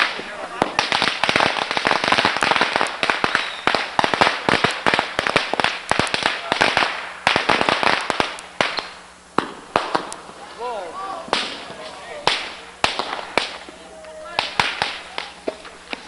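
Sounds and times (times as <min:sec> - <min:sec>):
firecrackers popping: 0:00.0 - 0:16.0.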